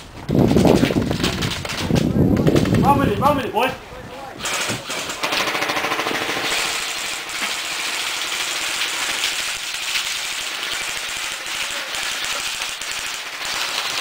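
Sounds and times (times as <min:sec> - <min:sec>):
airsoft guns firing: 0:04.4 - 0:14.0.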